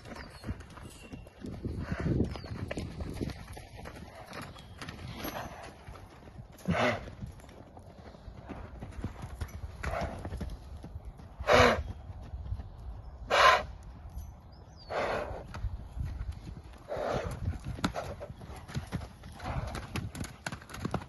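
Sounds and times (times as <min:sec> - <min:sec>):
horse hoofbeats: 0:00.0 - 0:21.0
horse snorts: 0:06.6 - 0:07.0, 0:11.4 - 0:11.8, 0:13.3 - 0:13.7, 0:14.9 - 0:15.4, 0:16.9 - 0:17.3.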